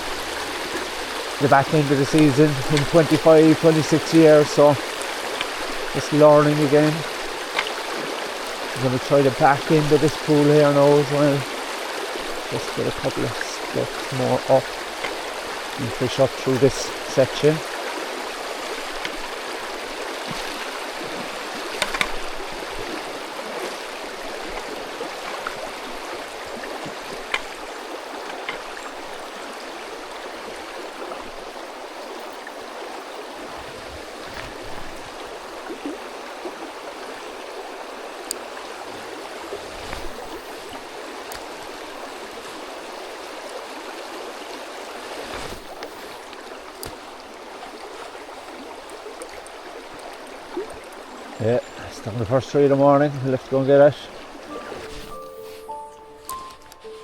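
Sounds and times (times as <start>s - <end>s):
stream flowing over rocks: 0.0s - 57.0s
faint clicks and knocks: 21.8s - 22.2s.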